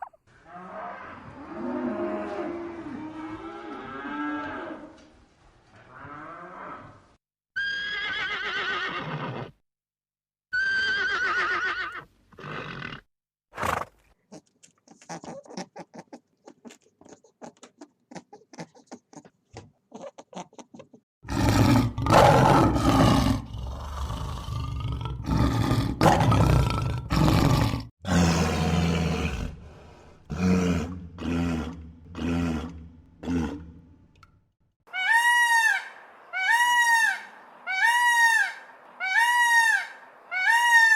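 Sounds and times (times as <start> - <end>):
animal clicks or grunts: 14.3 - 21.0
rough animal roaring: 21.2 - 33.9.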